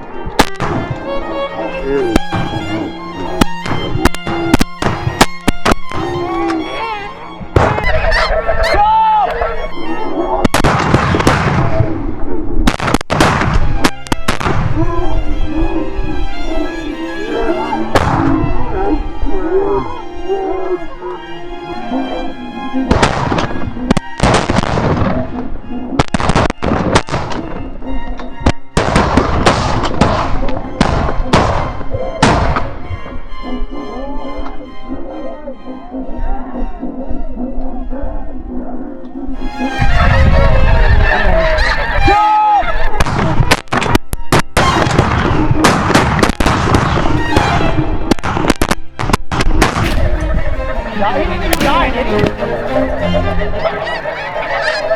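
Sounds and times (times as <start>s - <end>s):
background music: 0.0s - 11.0s, 13.6s - 42.9s, 43.7s - 54.9s
shotgun shots: 49.8s - 50.7s
shotguns firing: 49.8s - 52.4s.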